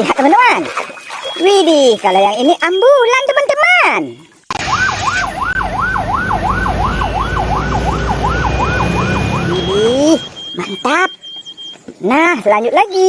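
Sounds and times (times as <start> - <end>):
ambulance siren yelping: 4.5 - 11.7.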